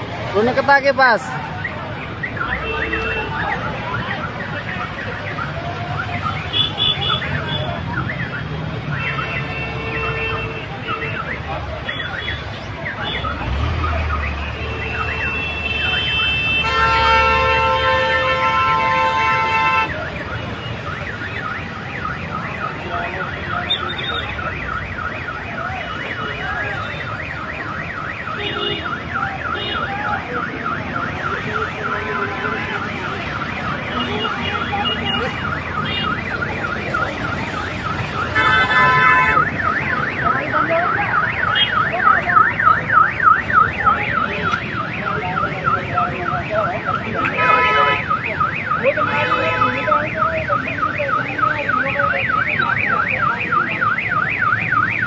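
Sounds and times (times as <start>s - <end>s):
road traffic: 0.0s - 55.0s
vehicle horns honking: 2.5s - 3.4s, 6.4s - 7.8s, 8.9s - 11.3s, 14.4s - 20.0s, 28.3s - 29.9s, 31.5s - 36.2s, 38.2s - 39.6s, 47.2s - 48.2s, 48.9s - 50.0s.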